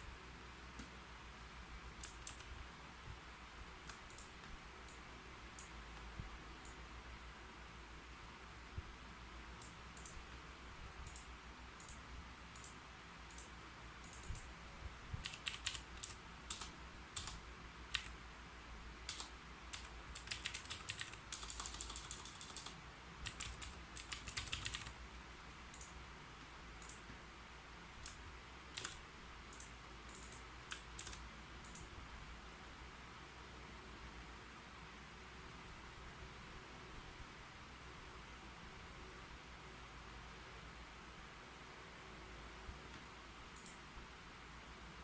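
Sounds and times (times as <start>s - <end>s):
typing on a keyboard: 2.0s - 2.5s, 14.1s - 14.5s, 15.2s - 18.2s, 19.1s - 25.0s, 28.0s - 29.0s, 29.6s - 31.9s.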